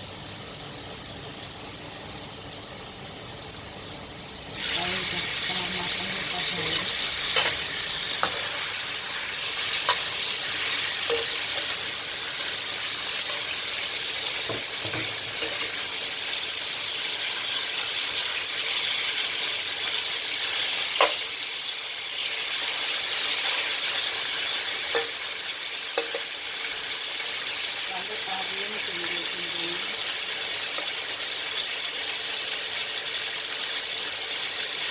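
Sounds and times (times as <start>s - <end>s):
fish sizzling in hot oil: 0.0s - 34.9s
utensil clicking against pan: 11.0s - 11.7s, 24.9s - 25.2s, 26.0s - 26.3s.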